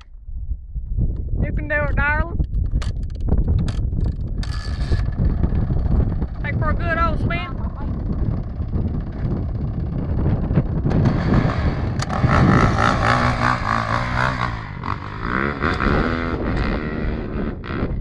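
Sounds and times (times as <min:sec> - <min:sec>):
dirt bike engine revving: 0:04.4 - 0:18.0.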